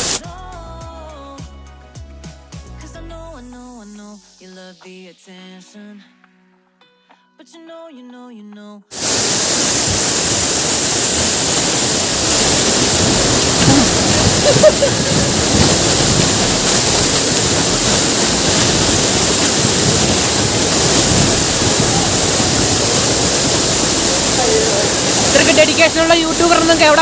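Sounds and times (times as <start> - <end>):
waterfall rushing: 0.0 - 0.2, 8.9 - 27.0.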